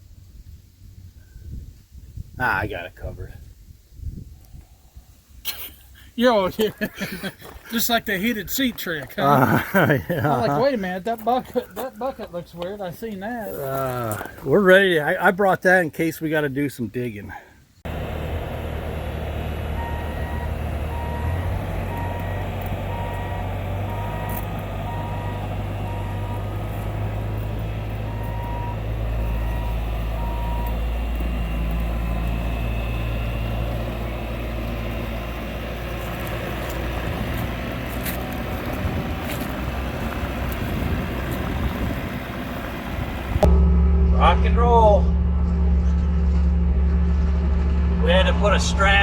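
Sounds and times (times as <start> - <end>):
diesel engine running: 17.8 - 49.0
backup alarm beeping: 19.5 - 35.3.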